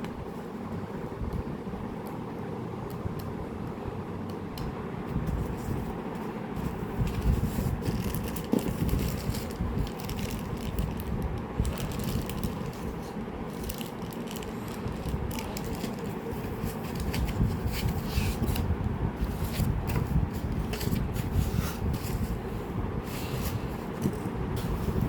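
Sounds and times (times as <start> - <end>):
packaging rustling and scraping: 5.2 - 25.0.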